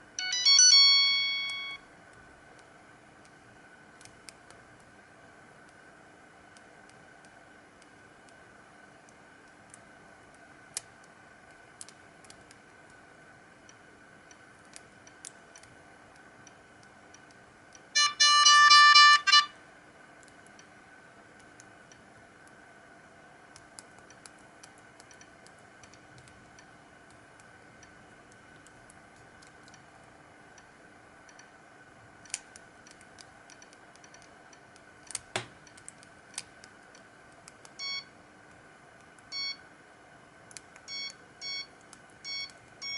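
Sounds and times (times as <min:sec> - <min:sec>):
short electronic tone: 0:00.2 - 0:01.8, 0:18.0 - 0:19.6.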